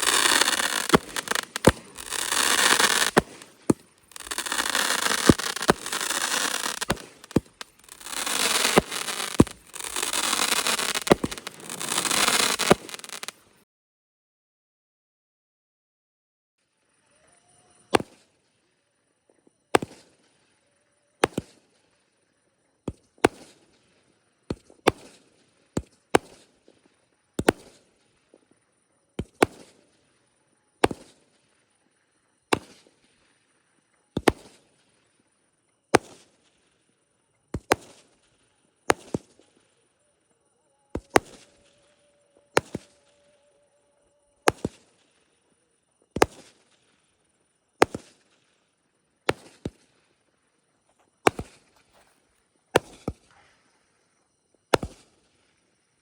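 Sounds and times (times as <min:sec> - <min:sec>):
fireworks bangs: 0:00.0 - 0:13.5.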